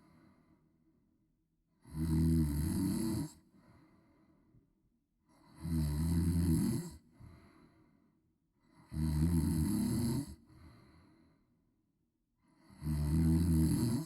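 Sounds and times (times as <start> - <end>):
woman snoring: 1.8 - 3.3, 5.5 - 6.9, 8.9 - 10.3, 12.7 - 14.0
faint breathing: 3.6 - 4.5, 7.2 - 8.1, 10.5 - 11.5.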